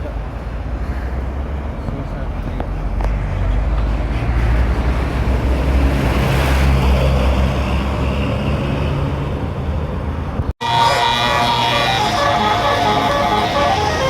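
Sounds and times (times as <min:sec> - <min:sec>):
bus diesel engine rumbling: 0:06.8 - 0:14.0
tune of held stepping tones: 0:10.6 - 0:14.0.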